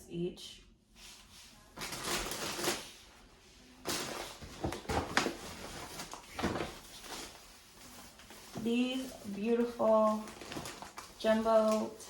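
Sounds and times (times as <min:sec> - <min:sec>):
packaging rustling and crinkling: 0:01.8 - 0:03.0, 0:03.8 - 0:12.0.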